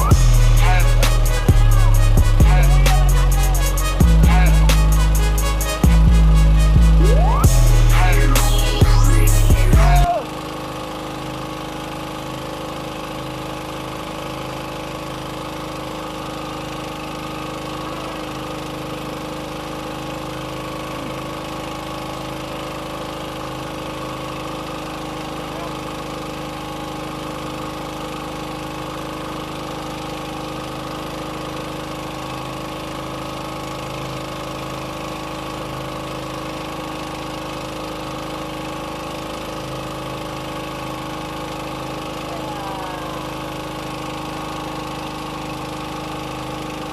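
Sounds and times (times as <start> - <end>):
boat engine droning: 0.0 - 26.8, 37.4 - 46.9.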